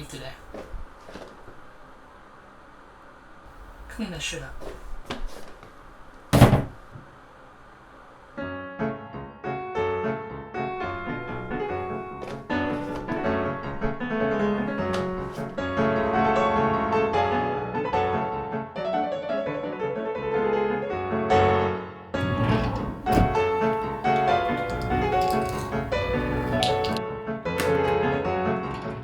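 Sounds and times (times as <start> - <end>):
piano music: 10.6 - 18.3, 22.2 - 27.0.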